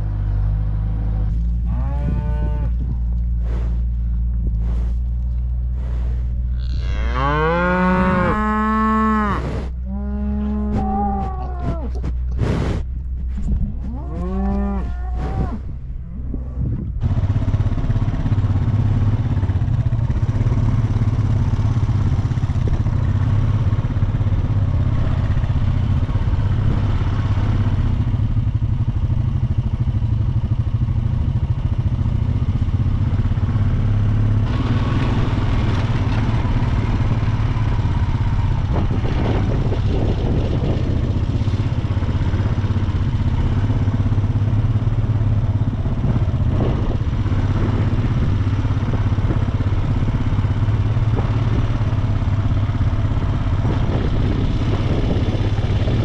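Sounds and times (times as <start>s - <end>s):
skid steer engine running: 0.0s - 56.0s
cow mooing: 1.6s - 3.0s, 6.4s - 12.0s, 13.7s - 16.7s.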